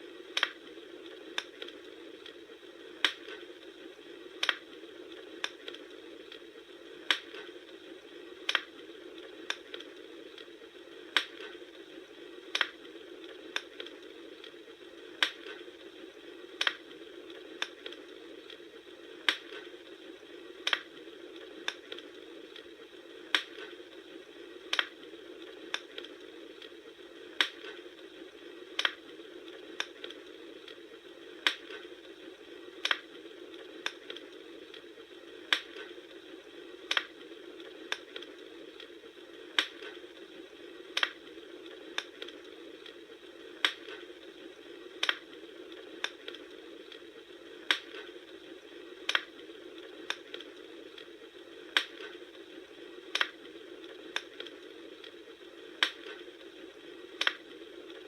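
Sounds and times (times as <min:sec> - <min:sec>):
fire popping: 0:00.0 - 0:58.0
wood fire crackling: 0:00.0 - 0:58.0.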